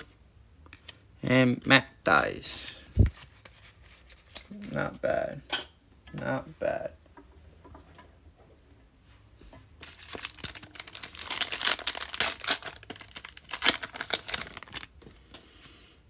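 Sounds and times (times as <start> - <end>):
plastic wrapper tearing and crinkling: 9.8 - 15.4.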